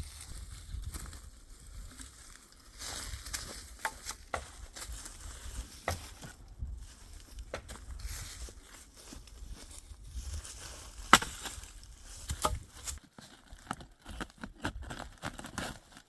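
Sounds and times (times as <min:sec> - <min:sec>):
dry twigs crunching and rustling: 0:00.0 - 0:16.0
twigs snapping: 0:03.1 - 0:05.0, 0:11.0 - 0:13.0.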